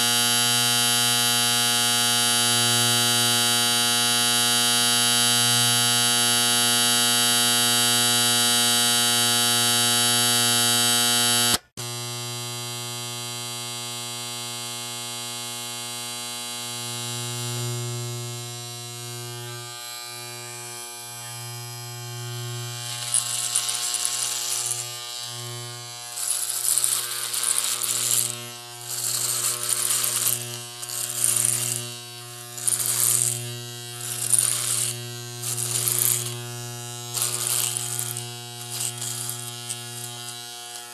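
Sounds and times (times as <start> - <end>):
electric shaver buzzing: 0.0 - 40.9
shaver cutting stubble: 21.2 - 40.9.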